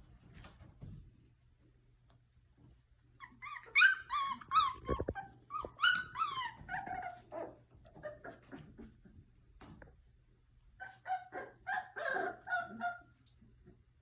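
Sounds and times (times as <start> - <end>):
puppy whining and yelping: 3.0 - 9.3, 10.6 - 13.9.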